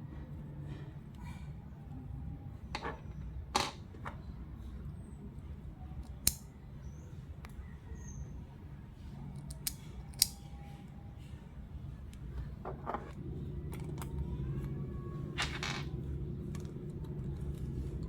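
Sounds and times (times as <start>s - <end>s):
low steady hum: 0.0s - 18.0s
plastic parts clicking: 9.3s - 10.4s, 12.1s - 14.8s.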